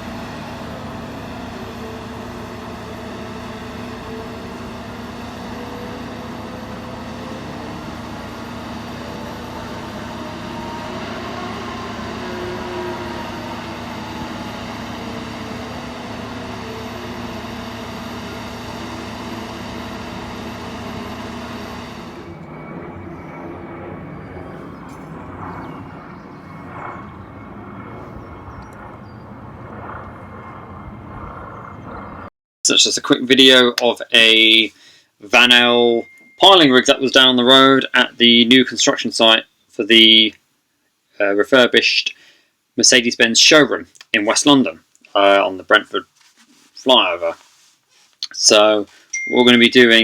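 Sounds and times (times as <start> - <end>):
diesel engine running: 0.0 - 32.2.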